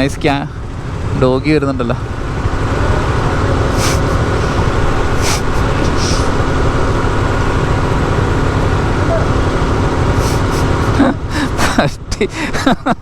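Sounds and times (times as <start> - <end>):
motorcycle engine running: 0.0 - 11.9
short hisses: 3.7 - 6.5.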